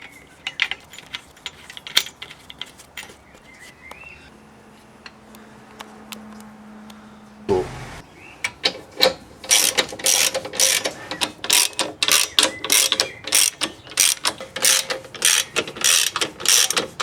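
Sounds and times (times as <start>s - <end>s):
ratchet wrench clicking: 9.5s - 17.0s.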